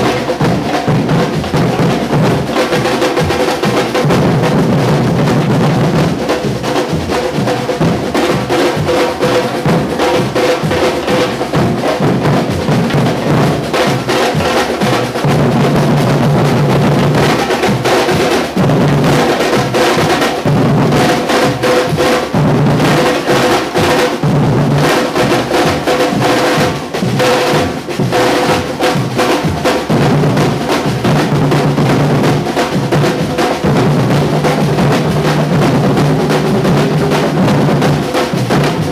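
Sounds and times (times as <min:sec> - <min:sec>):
percussion ensemble drum rhythm: 0:00.0 - 0:38.9
steady low drum pulse: 0:30.0 - 0:38.9.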